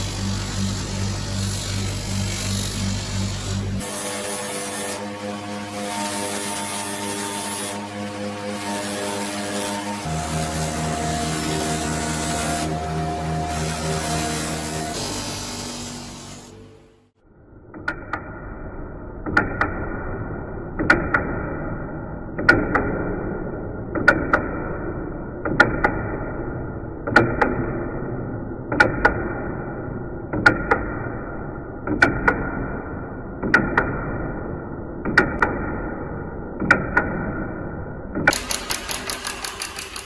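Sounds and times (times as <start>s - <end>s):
hand tool clicking on knife: 38.3s - 40.0s.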